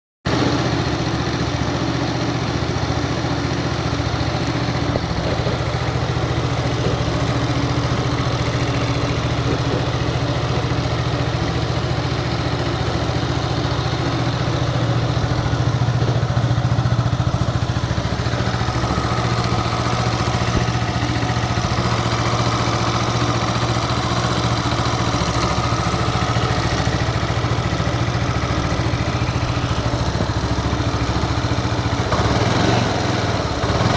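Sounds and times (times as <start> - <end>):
scooter engine idling: 0.3 - 33.9.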